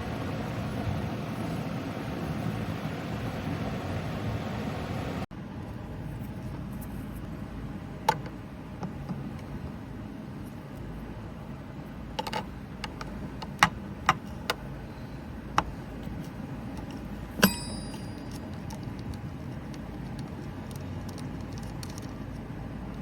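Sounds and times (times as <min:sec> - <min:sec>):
steady low hum: 0:00.0 - 0:21.2
small hard parts clicking: 0:16.8 - 0:23.0
metallic clink: 0:17.4 - 0:18.8.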